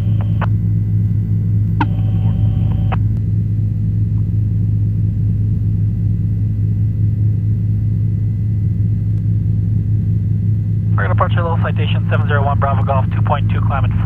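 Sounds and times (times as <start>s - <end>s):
radio transmission: 0.0s - 0.5s, 1.8s - 3.0s, 11.0s - 14.0s
helicopter drone: 0.0s - 14.0s.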